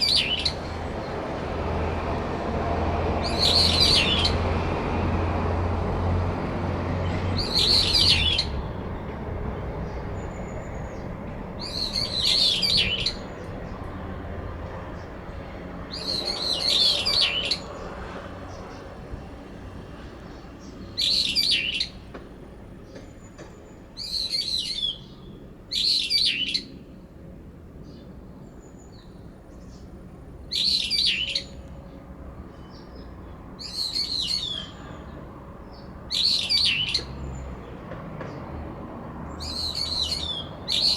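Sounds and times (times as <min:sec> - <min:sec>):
birds giving shrill calls: 0:00.0 - 0:00.8, 0:03.2 - 0:04.6, 0:07.2 - 0:08.9, 0:11.6 - 0:13.5, 0:15.9 - 0:17.9, 0:21.0 - 0:22.0, 0:25.7 - 0:26.8, 0:30.5 - 0:31.6, 0:33.6 - 0:35.0, 0:36.1 - 0:37.2, 0:39.4 - 0:40.9.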